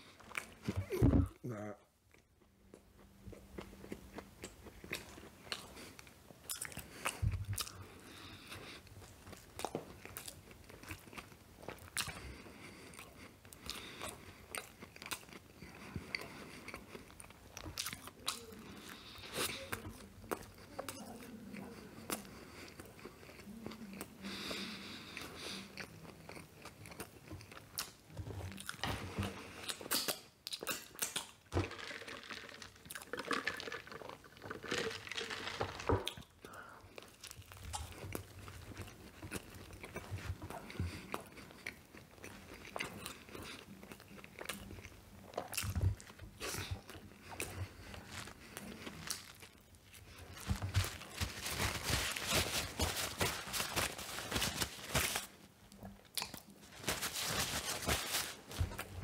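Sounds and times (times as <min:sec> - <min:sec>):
chewing and biting sandwich: 0:02.1 - 0:21.0, 0:21.6 - 0:59.0
food crunching: 0:02.1 - 0:21.2, 0:22.0 - 0:59.0
wet mouth clicks: 0:29.7 - 0:31.4.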